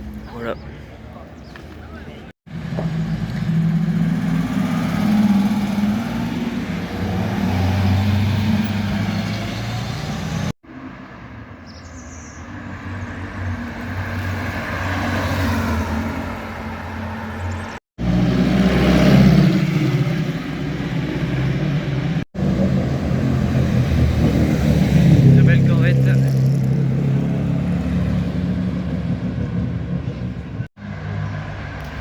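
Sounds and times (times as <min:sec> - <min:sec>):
car engines accelerating past: 0:02.6 - 0:10.6, 0:13.9 - 0:32.0.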